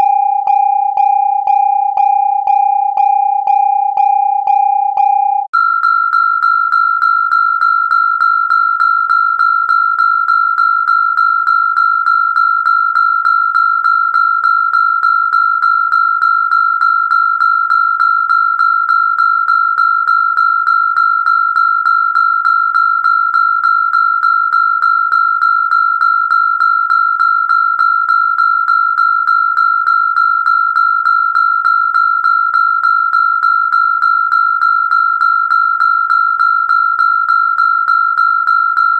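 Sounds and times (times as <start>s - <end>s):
pulsing steady siren tone: 0.0s - 29.5s.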